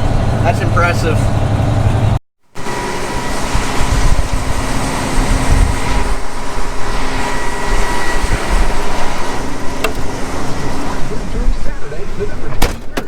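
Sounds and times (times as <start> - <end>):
heavy farm machinery rumbling: 0.0 - 13.0.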